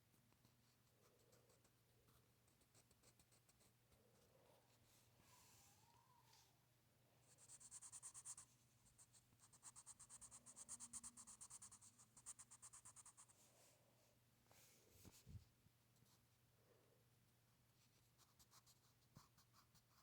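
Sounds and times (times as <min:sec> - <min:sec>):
scribbling on paper: 0:07.3 - 0:08.5, 0:09.4 - 0:13.3.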